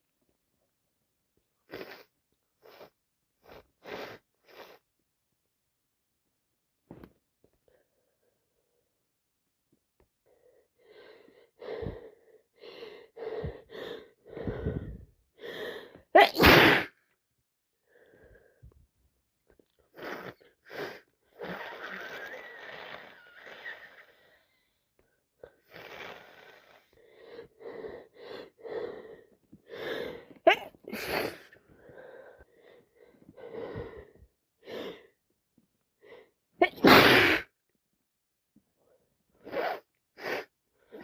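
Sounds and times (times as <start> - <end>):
catching breaths: 10.3 - 16.1, 19.8 - 35.2
woman sneezing: 16.2 - 17.0, 30.5 - 31.5, 36.6 - 37.5
breathy snuffly noises: 19.9 - 24.8, 25.5 - 32.8.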